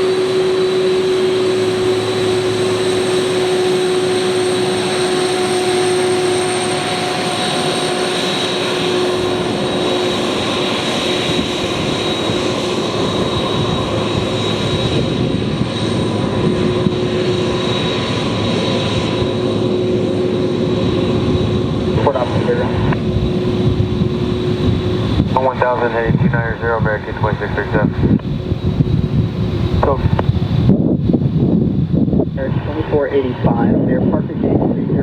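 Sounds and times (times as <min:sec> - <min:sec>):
jet engine whining tones: 0:00.0 - 0:35.0
jet engines running: 0:00.0 - 0:35.0.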